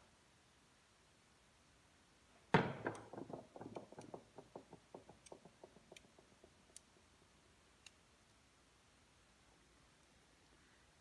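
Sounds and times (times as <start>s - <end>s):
metal part knocking on hard surface: 2.6s - 6.8s
metal part rattling as it rolls: 2.6s - 6.8s.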